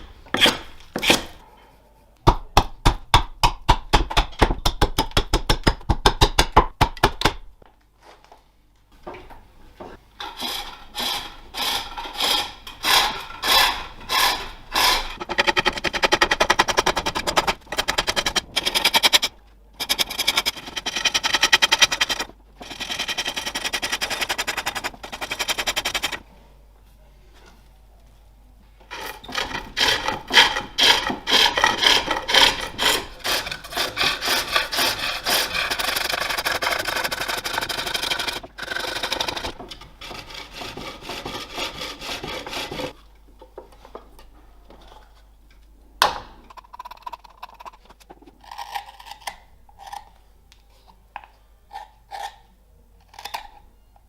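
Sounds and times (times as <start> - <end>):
pole lathe shaving wood: 10.3 - 26.2, 28.9 - 43.0.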